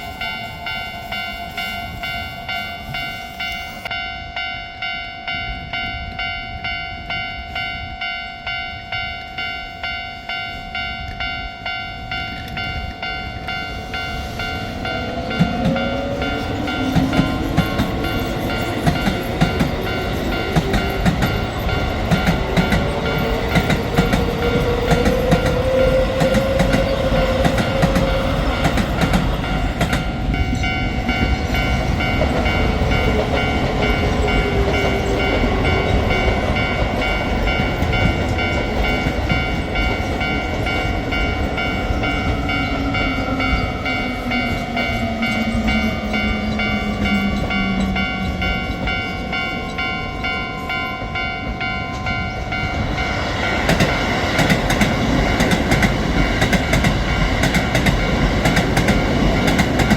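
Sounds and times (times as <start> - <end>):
level-crossing warning bell ringing: 0.0 - 59.9
train wheels clacking over rail joints: 16.8 - 30.1, 53.4 - 59.9.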